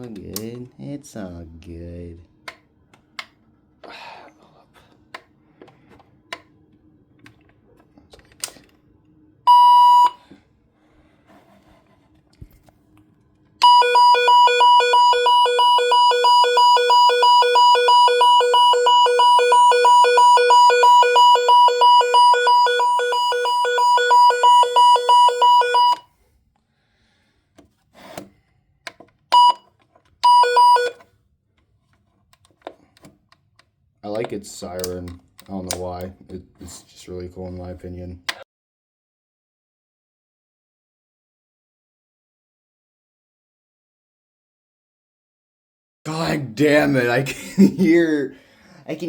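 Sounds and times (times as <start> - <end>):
pulsing two-tone siren: 13.6 - 26.0, 30.3 - 31.0
short beeps: 13.6 - 26.0, 30.2 - 31.0.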